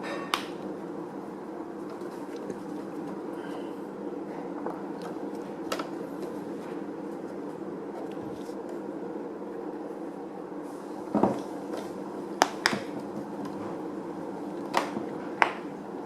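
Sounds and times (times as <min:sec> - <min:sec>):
low machine hum: 0:00.0 - 0:16.0.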